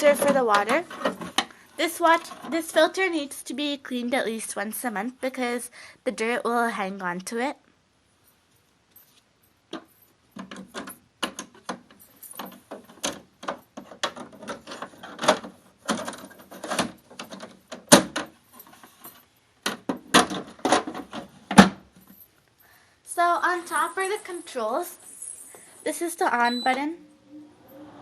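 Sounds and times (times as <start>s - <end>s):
hard plastic parts clicking and rattling: 0.0s - 2.6s, 9.7s - 22.2s.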